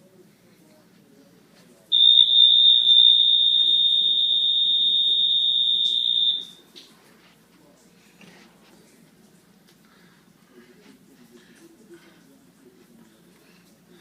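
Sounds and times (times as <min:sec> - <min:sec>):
high-pitched electronic buzzer tone: 0:02.0 - 0:06.6.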